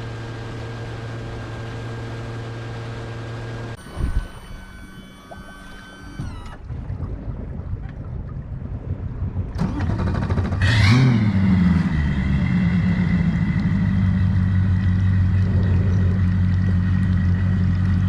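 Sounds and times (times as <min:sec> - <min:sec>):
engine starting and running: 0:09.4 - 0:18.0.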